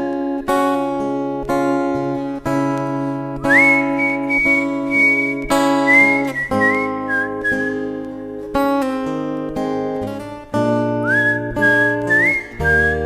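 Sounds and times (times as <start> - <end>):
acoustic guitar strumming: 0.0 - 13.0
whistled melody: 3.4 - 8.0, 10.9 - 13.0.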